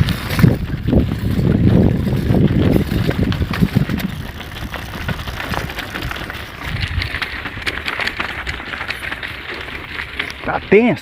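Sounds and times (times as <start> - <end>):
low rumble on microphone: 0.0 - 8.5.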